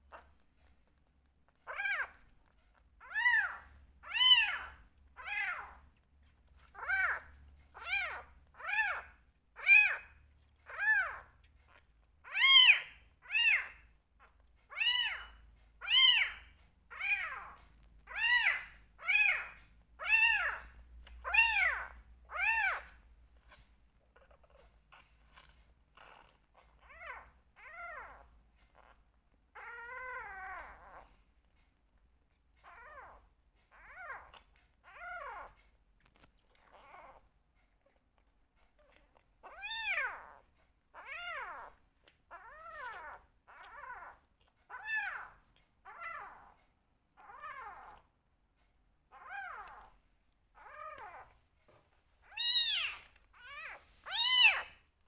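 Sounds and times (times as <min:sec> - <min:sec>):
kittens meowing: 0:12.2 - 0:23.0, 0:38.9 - 0:46.5, 0:52.2 - 0:54.9.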